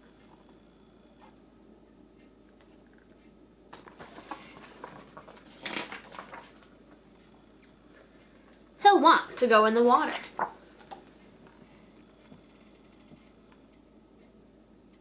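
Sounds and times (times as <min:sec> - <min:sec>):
paper rustling: 0:03.8 - 0:06.7.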